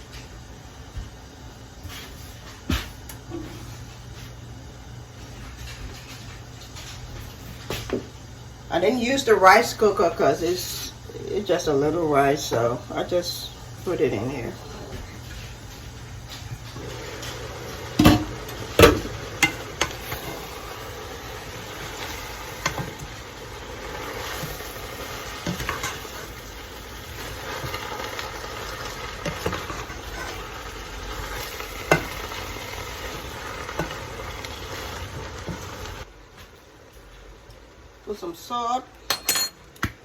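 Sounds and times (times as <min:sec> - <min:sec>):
food sizzling in a frying pan: 0:00.0 - 0:39.1
utensil stirring in pan: 0:09.5 - 0:36.1.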